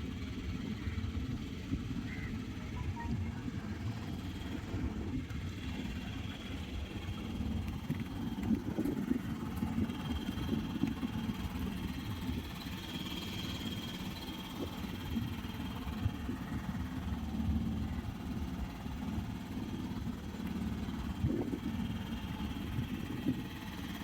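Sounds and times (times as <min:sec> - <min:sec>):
motorboat engine rumble: 0:00.0 - 0:24.0
faint high whine: 0:02.6 - 0:03.9.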